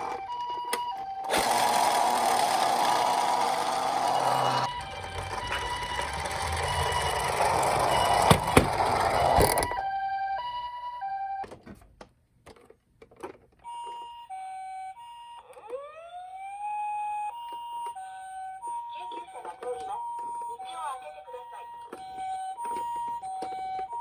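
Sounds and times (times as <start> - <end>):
rising siren wail: 0.0 - 11.4, 14.3 - 18.9
toy two-tone siren: 0.0 - 11.5, 13.6 - 24.0
toy rattling down plastic slope: 1.3 - 9.6.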